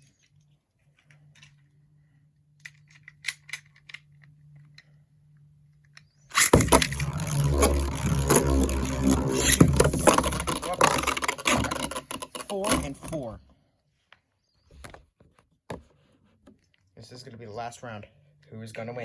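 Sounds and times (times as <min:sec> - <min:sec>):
faint clicks of toy parts: 0:00.0 - 0:08.1
spinning tops clashing metallic rattle: 0:06.3 - 0:13.2.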